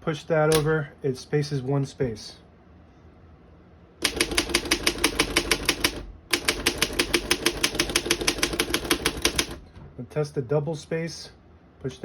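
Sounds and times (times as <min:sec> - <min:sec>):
manual typewriter typing: 0:04.0 - 0:09.6.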